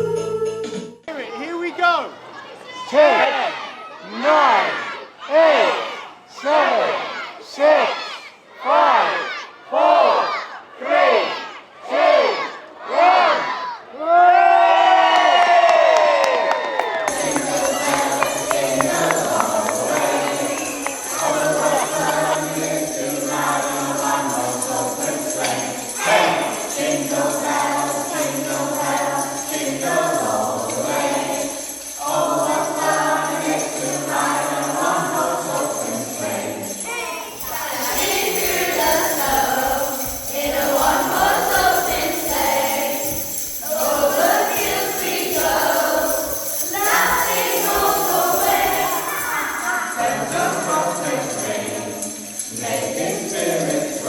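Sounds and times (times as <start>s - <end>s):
christmas music: 0.0s - 2.1s, 16.9s - 54.0s
sleigh bells ringing: 17.0s - 54.0s.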